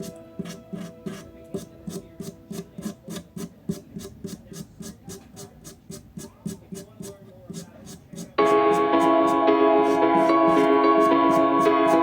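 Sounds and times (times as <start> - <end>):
nail file rasping on fingernail: 0.4 - 12.0.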